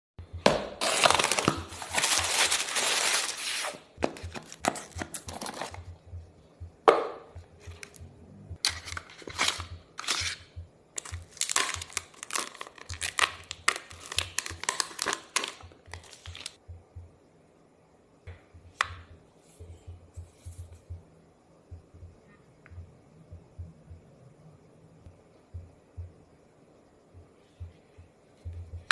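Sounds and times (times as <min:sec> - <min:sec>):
packaging tearing: 0:00.8 - 0:03.9
packaging rustling and crinkling: 0:00.8 - 0:05.9, 0:08.6 - 0:10.4, 0:11.0 - 0:16.6.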